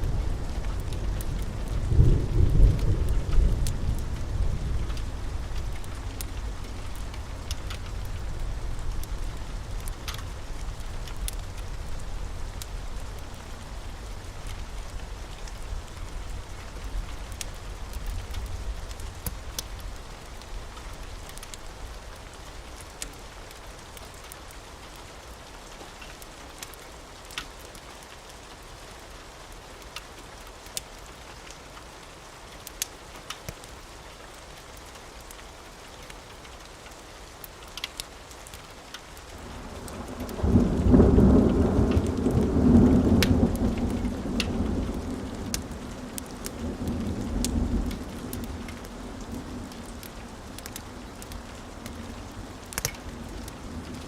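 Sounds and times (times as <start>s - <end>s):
rolling thunder rumble: 0.0s - 20.0s, 39.4s - 54.0s
steady rain: 0.0s - 54.0s.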